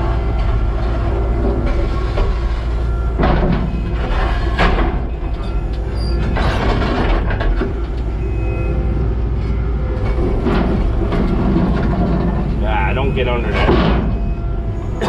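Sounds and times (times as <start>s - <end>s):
track loader engine running: 0.0s - 15.0s.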